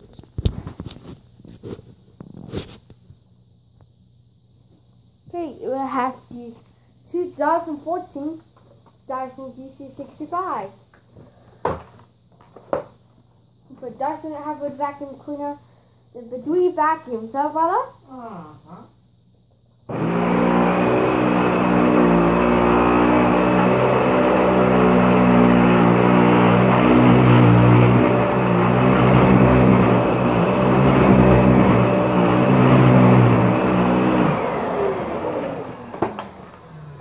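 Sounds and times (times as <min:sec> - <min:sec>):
vacuum cleaner motor hum: 0:19.9 - 0:37.0.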